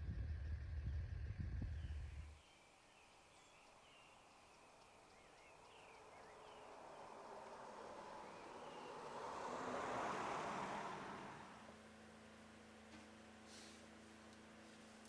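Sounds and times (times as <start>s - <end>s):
low rumble of car moving: 0.0s - 2.5s, 3.2s - 15.0s
bird chirps: 0.4s - 9.1s
hiss: 13.4s - 13.9s.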